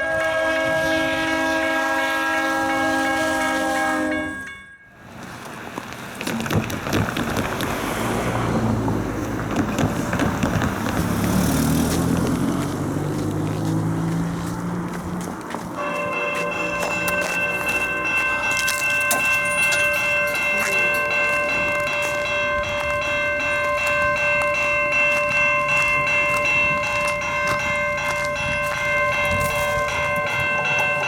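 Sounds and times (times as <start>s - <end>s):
train air horn blast: 0.0s - 4.5s, 15.8s - 17.8s
diesel locomotive engines: 0.0s - 31.0s
wheels clattering over rails: 4.9s - 31.0s.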